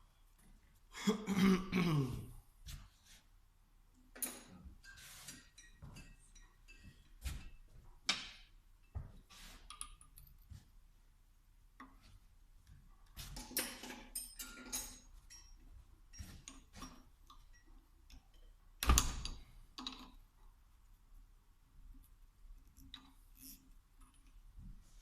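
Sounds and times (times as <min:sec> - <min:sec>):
metal tools clicking and clinking: 0:13.4 - 0:18.6.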